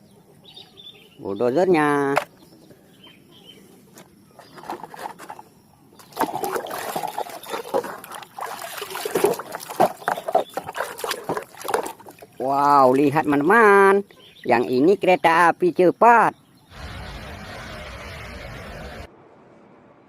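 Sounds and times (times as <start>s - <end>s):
water splashing and trickling: 4.4s - 14.6s.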